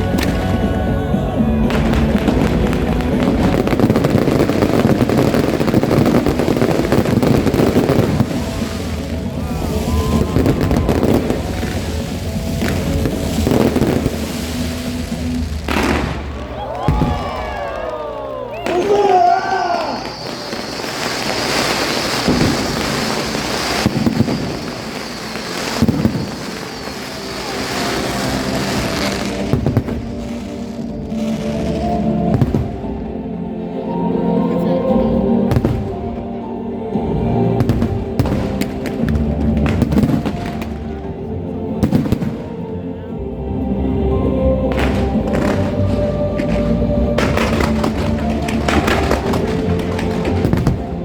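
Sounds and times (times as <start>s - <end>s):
fireworks crackling and popping: 0.0s - 33.2s, 37.6s - 42.7s, 44.6s - 51.0s
low rumble of fireworks: 0.0s - 33.3s, 34.9s - 43.2s, 44.0s - 51.0s
low booms of bursting shells: 1.6s - 17.8s, 20.0s - 31.4s, 32.2s - 33.1s, 35.5s - 36.2s, 37.6s - 41.1s, 41.8s - 42.7s, 44.7s - 51.0s.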